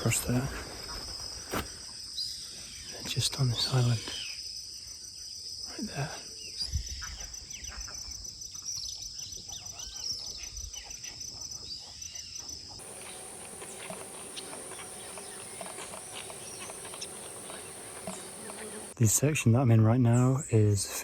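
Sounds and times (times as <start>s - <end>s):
insect chorus drone: 0.0s - 8.6s, 12.8s - 19.0s.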